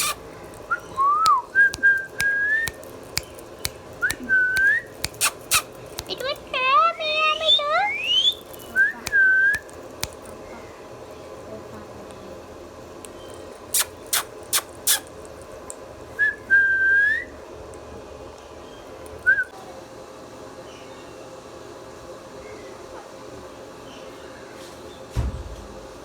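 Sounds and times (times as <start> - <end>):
parrot sharp high calls: 0.0 - 0.2, 4.4 - 6.4, 7.0 - 9.3, 13.7 - 15.1
parrot whistling: 0.0 - 5.7, 7.1 - 9.7, 13.8 - 15.1.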